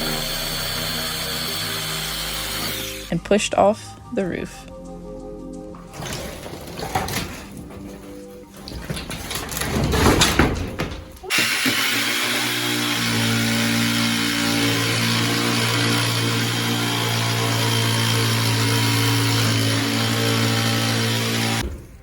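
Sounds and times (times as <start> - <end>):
motor running steadily: 0.0 - 3.1.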